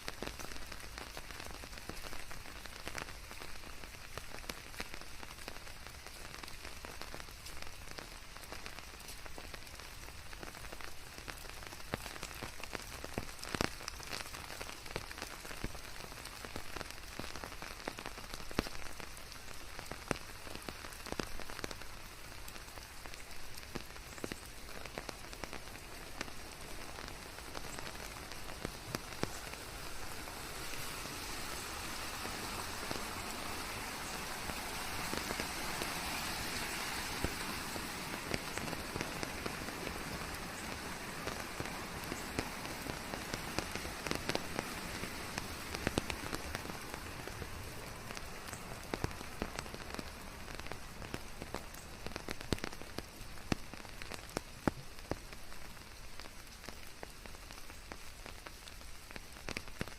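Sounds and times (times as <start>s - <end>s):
rain on leaves: 0.0s - 59.9s
white noise: 24.4s - 52.7s.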